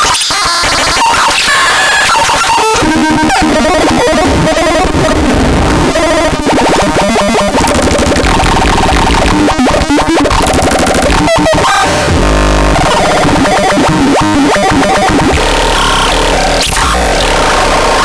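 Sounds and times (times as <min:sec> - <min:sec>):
glitching electronic noise: 0:00.0 - 0:18.0
deep electronic drone: 0:02.8 - 0:18.0.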